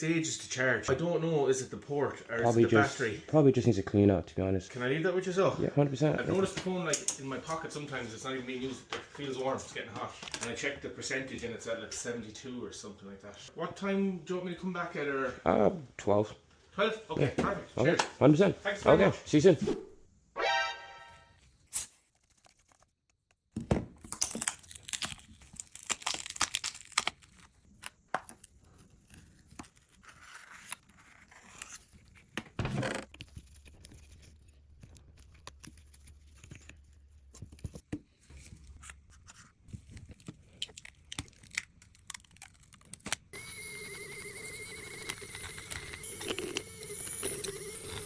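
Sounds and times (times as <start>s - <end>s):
crinkling and tearing: 21.7s - 23.3s, 23.9s - 32.4s, 33.0s - 48.0s.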